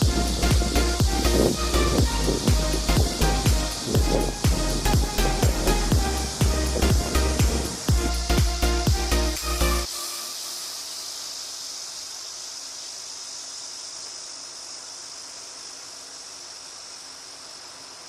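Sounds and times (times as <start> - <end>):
background music: 0.0 - 10.3
high-pitched insect drone: 0.0 - 18.0.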